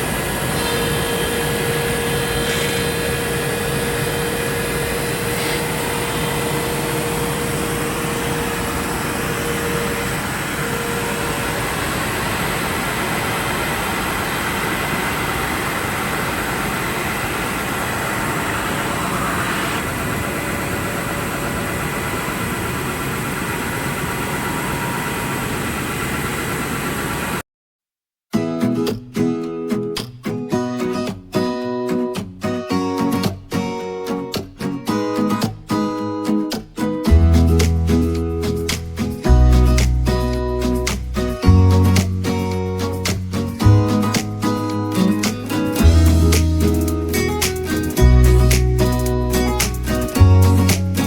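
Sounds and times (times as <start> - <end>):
planer-sander machine running: 0.0 - 27.4.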